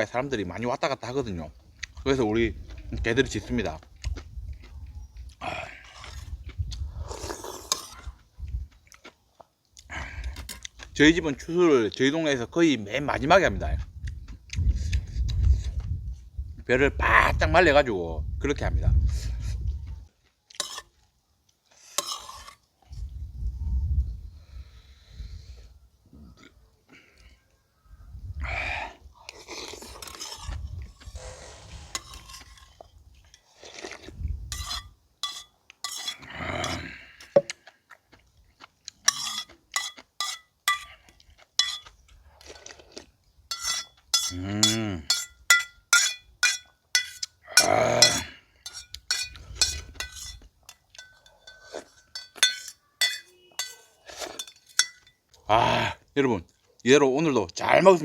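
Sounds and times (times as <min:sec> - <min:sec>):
eating sounds: 0:01.6 - 0:11.0, 0:28.4 - 0:45.5, 0:47.0 - 0:56.8
cutlery clinking on dishes: 0:34.6 - 0:36.2, 0:39.1 - 0:40.9, 0:41.6 - 0:41.9, 0:43.5 - 0:55.2.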